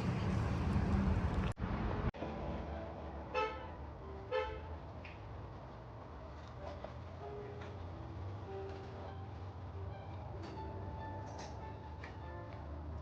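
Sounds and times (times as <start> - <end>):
low rumble of traffic: 0.0 - 13.0
car horn toots: 3.3 - 3.7.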